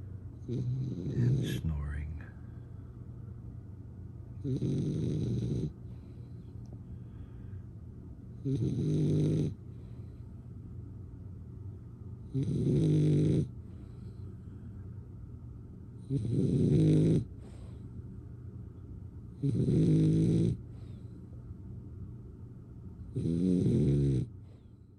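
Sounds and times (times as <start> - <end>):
steady low hum: 0.0 - 24.9
loud rattling snores: 0.4 - 1.4, 4.4 - 5.7, 8.4 - 9.6, 12.4 - 13.5, 16.1 - 17.3, 19.4 - 20.6, 23.2 - 24.3.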